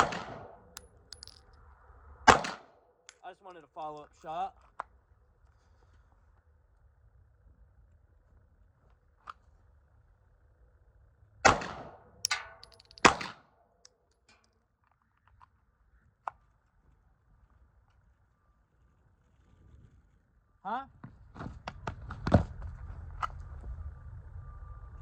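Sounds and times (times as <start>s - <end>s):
short metallic ring: 12.3s - 13.2s.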